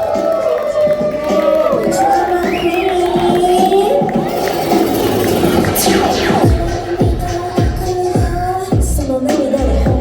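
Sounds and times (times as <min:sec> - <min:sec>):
electronic pop music over loudspeakers: 0:00.0 - 0:10.0
sustained synth notes: 0:04.0 - 0:08.3
deep kick drum: 0:06.4 - 0:09.1.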